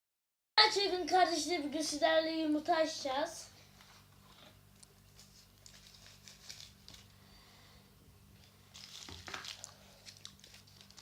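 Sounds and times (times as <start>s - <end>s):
foil wrapper crinkling: 5.1s - 7.1s, 8.6s - 11.0s.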